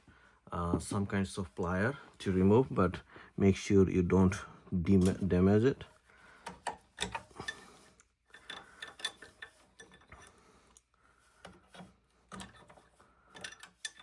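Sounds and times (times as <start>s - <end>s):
wire connector clicking and scraping: 6.4s - 14.0s.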